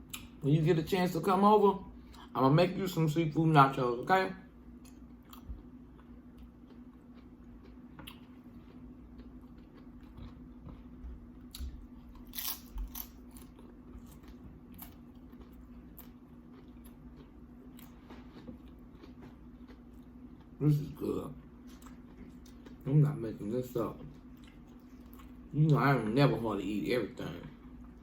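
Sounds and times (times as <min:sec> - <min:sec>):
faint steady hum: 0:00.0 - 0:28.0
person chewing crunchy chips: 0:04.8 - 0:23.2, 0:23.8 - 0:26.4.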